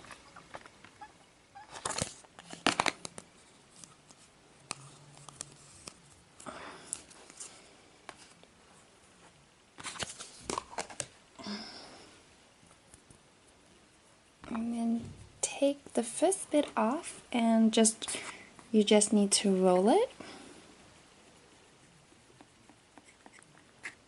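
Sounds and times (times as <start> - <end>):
soft rustling of dough: 0.0 - 24.0
play dough clicks and crackles: 1.7 - 8.5.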